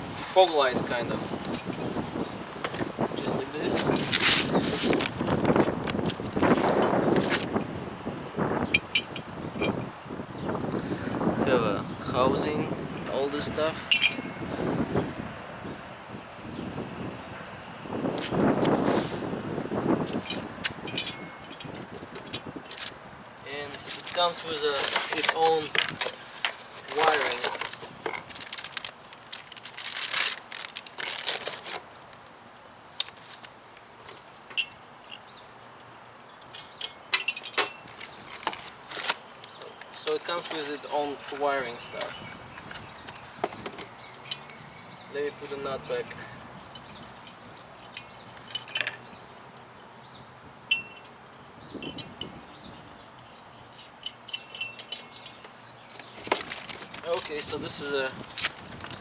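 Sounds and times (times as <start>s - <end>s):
small metal hardware clinking: 8.7s - 9.8s, 13.8s - 14.4s, 20.1s - 23.0s, 36.3s - 38.6s, 43.1s - 45.4s, 46.1s - 51.2s, 53.2s - 57.7s
packaging crinkling: 23.8s - 31.9s, 56.0s - 57.6s.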